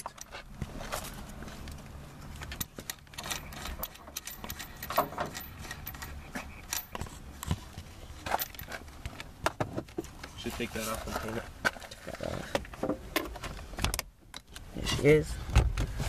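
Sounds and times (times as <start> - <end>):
low steady hum: 0.0 - 16.0
hand tools clicking and knocking: 2.4 - 7.6.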